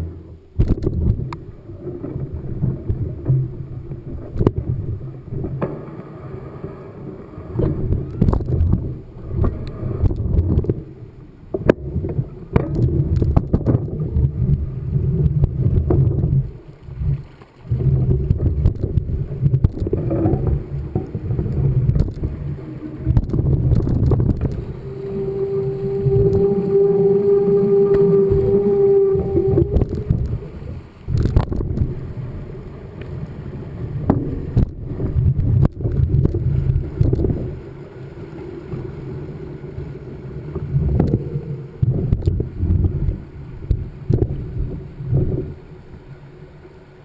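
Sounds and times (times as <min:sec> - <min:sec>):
wind buffeting microphone: 0:11.7 - 0:32.5, 0:40.6 - 0:45.6.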